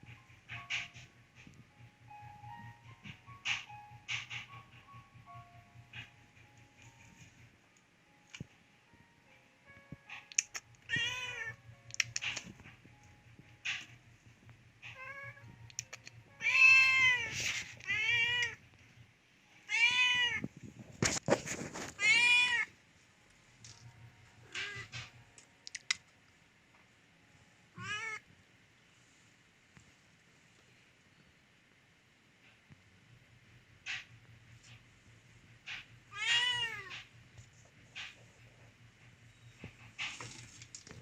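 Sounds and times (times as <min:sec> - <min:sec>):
cat meowing: 0:10.5 - 0:12.2, 0:14.8 - 0:18.6, 0:19.7 - 0:20.4, 0:22.0 - 0:22.7, 0:27.8 - 0:28.2, 0:36.1 - 0:37.0.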